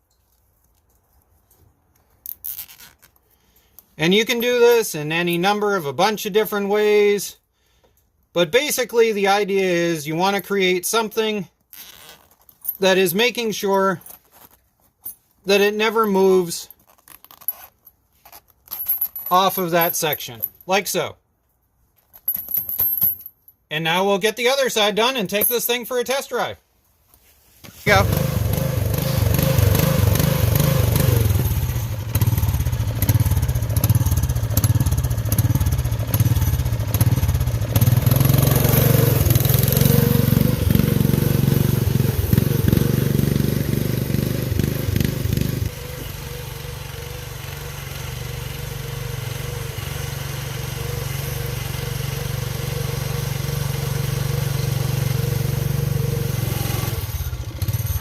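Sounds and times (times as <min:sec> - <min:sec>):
lawn tractor engine running: 0:27.8 - 0:58.0.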